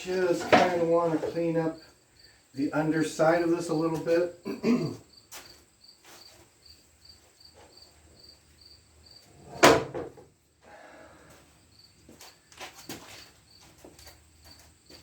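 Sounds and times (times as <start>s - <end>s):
cricket chirping: 1.3s - 3.4s, 4.4s - 9.4s, 11.5s - 15.0s.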